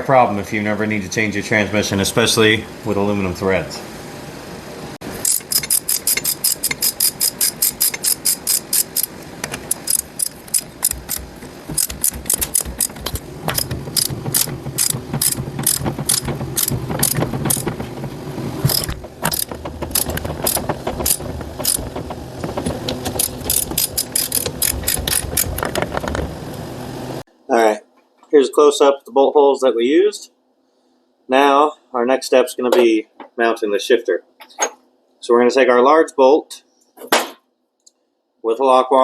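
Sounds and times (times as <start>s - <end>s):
ratchet wrench clicking: 5.2s - 17.7s, 18.7s - 21.9s, 23.1s - 25.6s.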